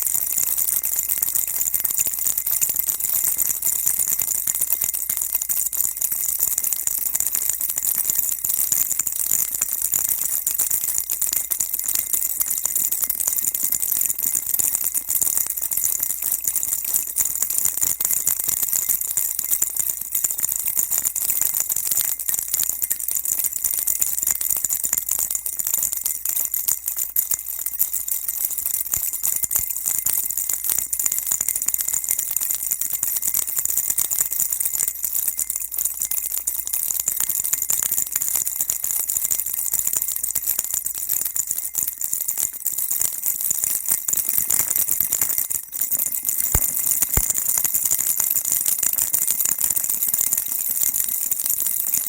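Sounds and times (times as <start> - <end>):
baby rattle shaking: 0.0 - 7.0, 16.6 - 48.4.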